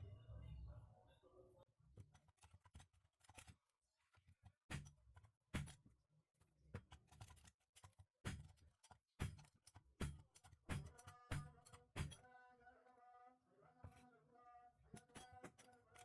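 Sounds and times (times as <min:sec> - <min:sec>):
small metal parts clicking: 0:06.9 - 0:12.2, 0:15.0 - 0:16.0.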